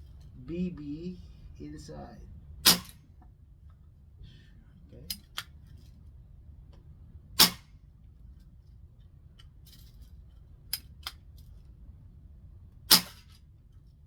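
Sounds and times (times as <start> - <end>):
air pistol shot pop: 12.9 - 13.2.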